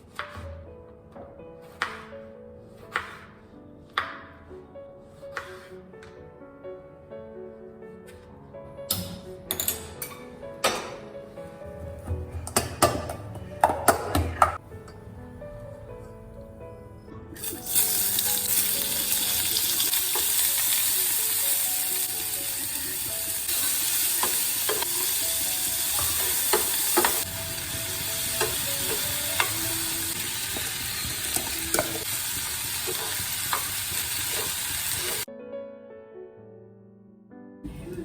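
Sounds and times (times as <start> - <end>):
rice sizzling in a hot pan: 17.4 - 35.3.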